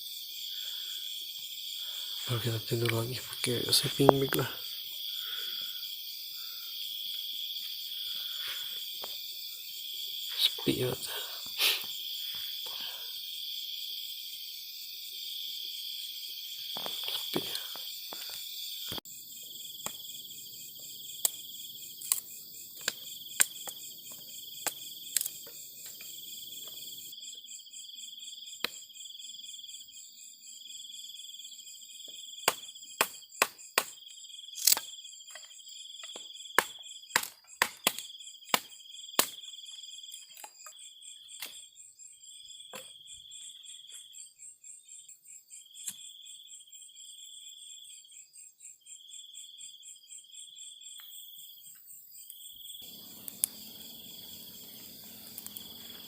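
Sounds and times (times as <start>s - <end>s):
insects chirping: 0.0s - 56.0s
sharp clicks and snaps: 24.6s - 25.4s, 53.2s - 53.6s, 55.2s - 55.7s.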